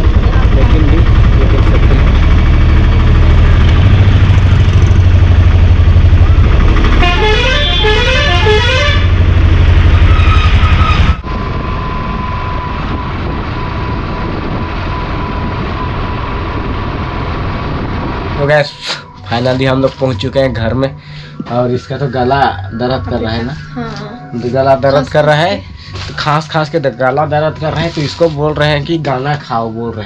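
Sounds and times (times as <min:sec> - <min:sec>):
low road rumble in traffic: 0:00.0 - 0:30.0
steady vehicle hum with whine: 0:00.0 - 0:30.0
musical vehicle horn tune: 0:06.9 - 0:09.2.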